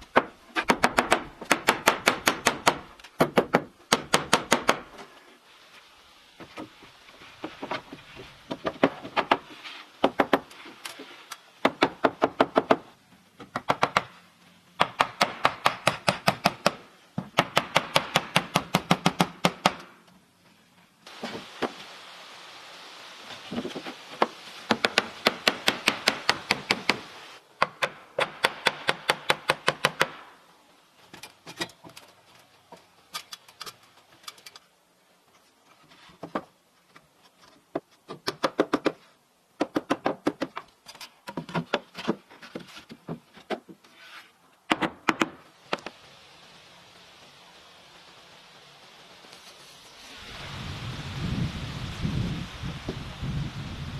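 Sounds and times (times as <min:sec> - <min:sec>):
steady noise: 0:45.4 - 0:53.9.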